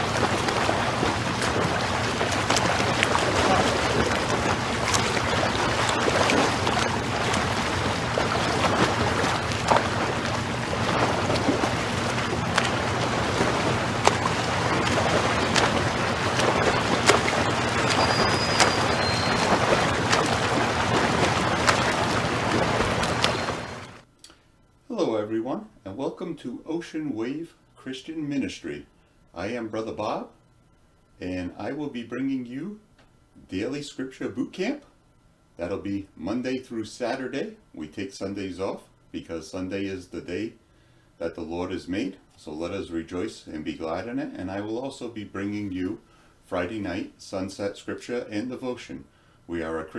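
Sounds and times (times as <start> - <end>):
water noise: 0.0 - 24.0
wind: 0.0 - 24.0
low even hum: 0.0 - 49.9.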